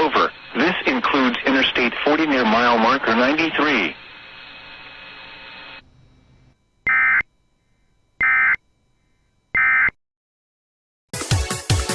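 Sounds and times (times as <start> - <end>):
digital data tone bursts: 6.8 - 7.3, 8.2 - 8.7.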